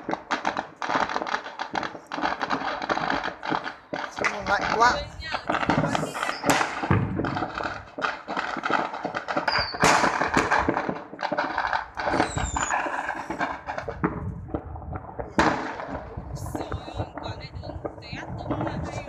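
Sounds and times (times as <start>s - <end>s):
fireworks crackling and banging: 0.0s - 19.0s
high firework whistle: 5.9s - 6.7s, 9.4s - 10.0s, 12.1s - 13.4s
falling firework whistle: 6.0s - 6.7s, 9.4s - 10.1s, 12.0s - 13.4s.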